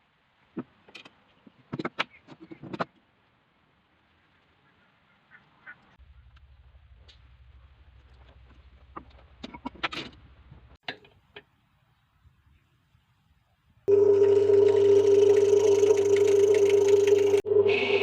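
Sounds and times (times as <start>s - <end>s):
power tool whining: 13.9s - 18.0s.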